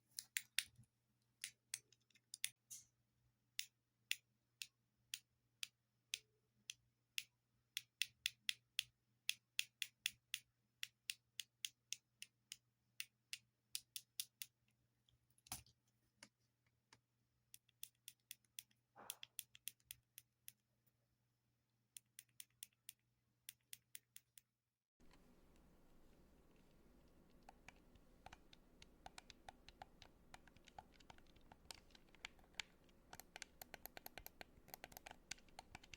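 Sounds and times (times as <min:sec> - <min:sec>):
buttons clicking: 0:25.0 - 0:35.9
faint hiss: 0:25.0 - 0:35.9.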